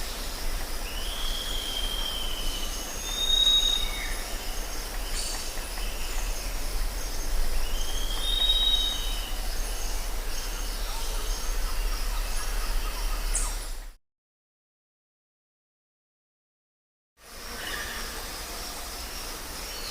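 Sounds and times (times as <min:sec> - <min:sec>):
dense jungle hiss: 0:00.0 - 0:14.0, 0:17.2 - 0:19.9
birds whistling and chirping: 0:00.9 - 0:13.9.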